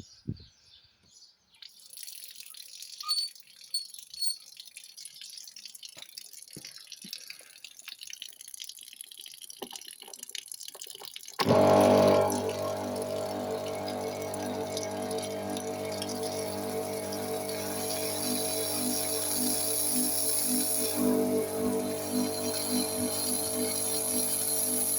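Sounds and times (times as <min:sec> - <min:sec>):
water hissing and dripping: 0:01.8 - 0:24.9
pressure washer motor humming: 0:11.4 - 0:24.9.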